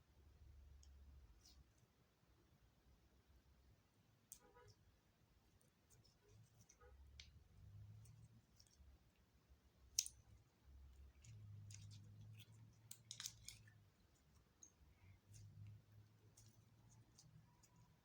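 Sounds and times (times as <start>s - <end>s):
slime squishing by hand: 5.5s - 18.0s.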